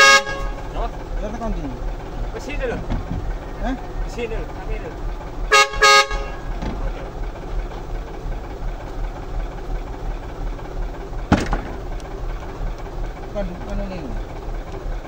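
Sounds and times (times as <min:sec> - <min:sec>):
truck horn toots: 0:00.0 - 0:01.0, 0:05.4 - 0:07.0
engine noise: 0:00.0 - 0:15.0.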